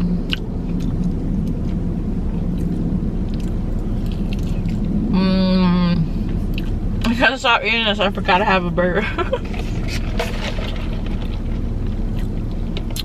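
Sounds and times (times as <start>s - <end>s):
low steady rumble: 0.0s - 13.0s
chewing: 2.4s - 4.9s, 9.5s - 13.0s.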